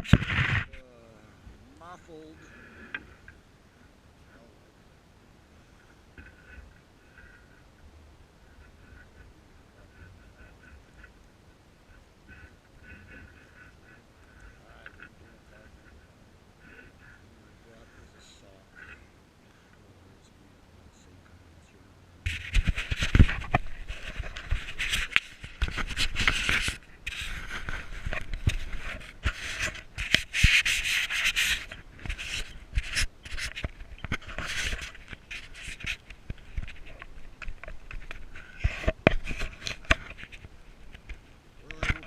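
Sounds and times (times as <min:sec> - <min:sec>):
rubbing and scratching: 0:00.0 - 0:00.8, 0:05.8 - 0:07.6, 0:08.4 - 0:11.2, 0:11.9 - 0:19.1, 0:22.2 - 0:42.0
small clicks and knocks: 0:31.5 - 0:42.0.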